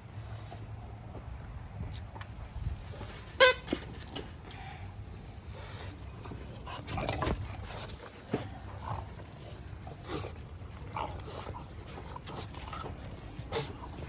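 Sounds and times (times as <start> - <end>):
rough puppy noise: 4.7 - 14.0
puppies scuffling and clicking: 6.6 - 14.0.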